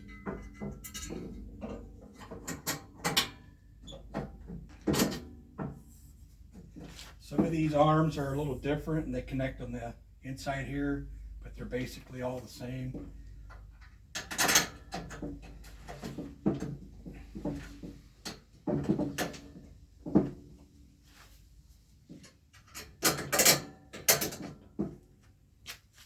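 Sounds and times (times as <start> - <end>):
metal parts knocking and clunking: 0.0 - 5.8, 13.0 - 19.5, 22.2 - 25.0.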